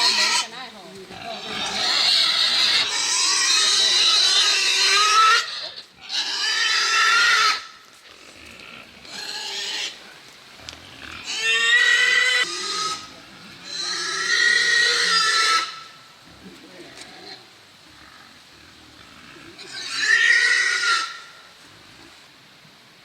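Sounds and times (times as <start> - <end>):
pigs squealing: 0.0 - 10.0, 10.8 - 16.0, 19.0 - 21.4.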